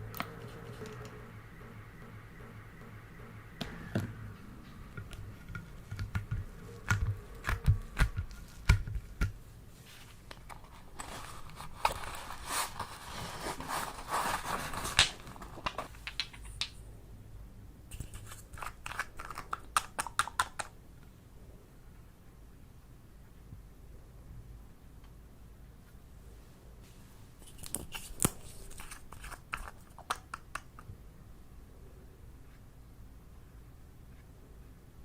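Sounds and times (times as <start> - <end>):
crinkling and crackling: 5.0 - 16.8.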